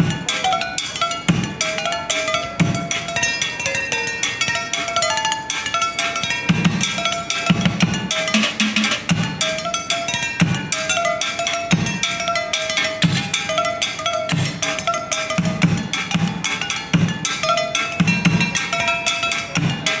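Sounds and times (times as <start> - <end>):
bell-like notes: 0.0 - 20.0
percussion ensemble groove: 0.0 - 20.0
low drum beats: 7.5 - 9.4, 18.0 - 18.6.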